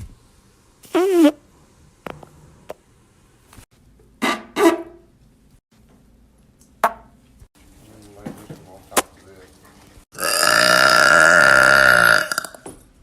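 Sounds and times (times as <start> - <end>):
person passing gas: 10.2 - 12.6.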